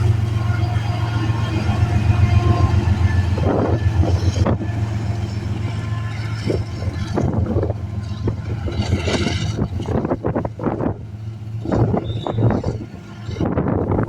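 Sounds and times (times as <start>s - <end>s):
diesel locomotive drone: 0.0s - 14.0s
clanks and knocks: 3.1s - 11.0s.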